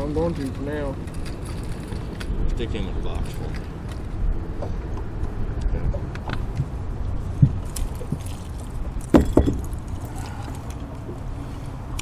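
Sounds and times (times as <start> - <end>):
steady low rumble: 0.0 - 12.0
knocks and clunks of gear: 9.0 - 9.8.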